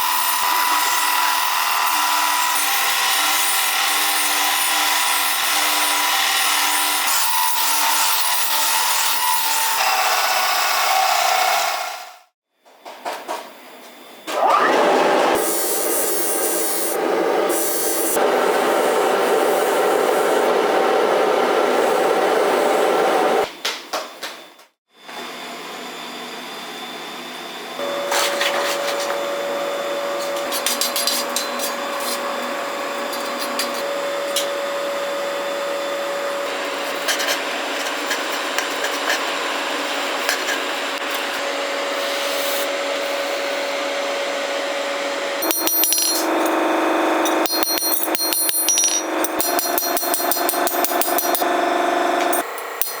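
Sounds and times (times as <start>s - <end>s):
filing and rubbing a knife: 30.2s - 34.4s, 36.4s - 43.3s
tool taps and clicks: 47.3s - 51.4s.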